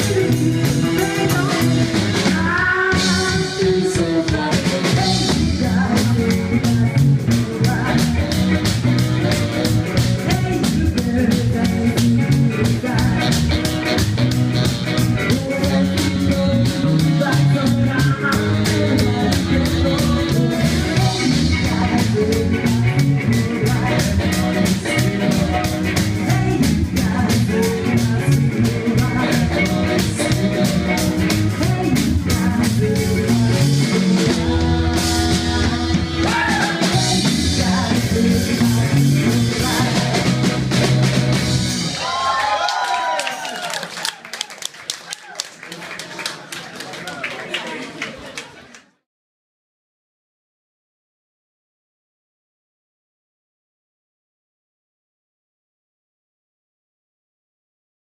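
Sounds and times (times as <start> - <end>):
person singing: 0.0 - 42.3
rock band playing live: 0.0 - 42.5.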